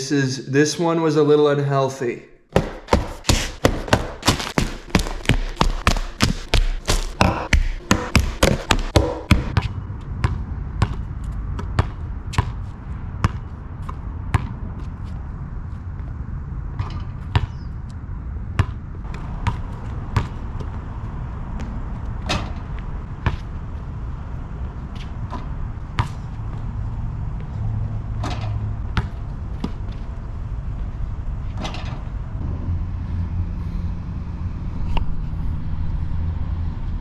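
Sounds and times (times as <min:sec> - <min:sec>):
sharp knocks: 0:02.5 - 0:09.6
steady low hum: 0:02.6 - 0:28.1, 0:28.8 - 0:37.0.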